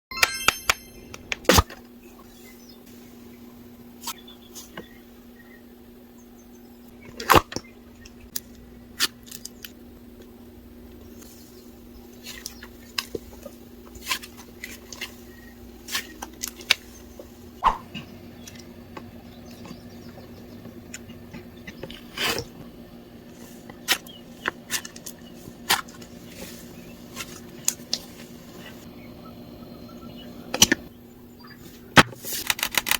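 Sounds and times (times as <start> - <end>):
faint steady hum: 0.3 - 32.3.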